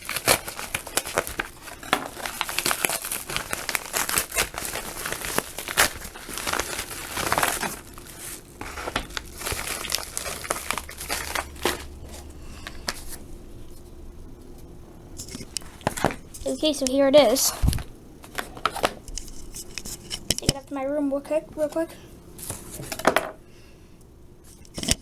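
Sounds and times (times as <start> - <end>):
packaging being torn open: 0.0 - 11.9
wrapping crinkling and rustling: 0.0 - 13.9, 15.2 - 20.6.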